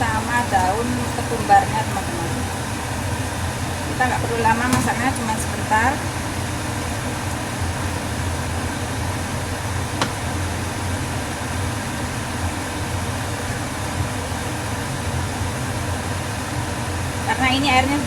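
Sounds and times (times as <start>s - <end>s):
pot of broth boiling: 0.0s - 18.0s.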